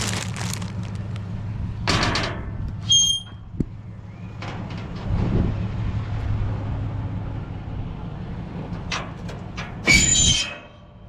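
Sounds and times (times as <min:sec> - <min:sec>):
vehicle engine running: 0:00.0 - 0:09.8
metal and plastic crash: 0:01.9 - 0:02.6.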